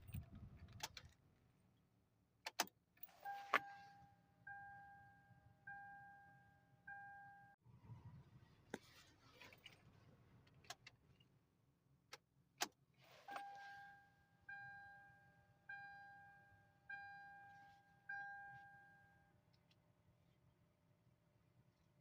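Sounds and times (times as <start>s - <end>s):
car warning chime dinging: 3.2s - 7.6s, 13.3s - 19.4s.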